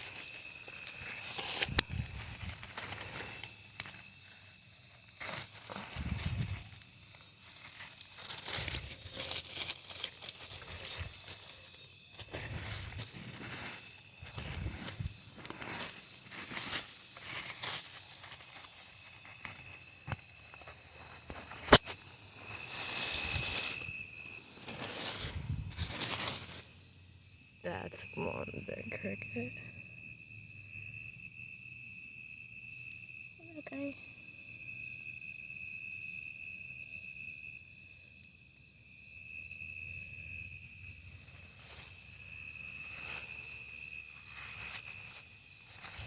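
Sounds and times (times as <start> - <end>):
leaves and stems rustling: 0.0 - 27.0, 41.0 - 46.0
cricket chirping: 0.0 - 46.0.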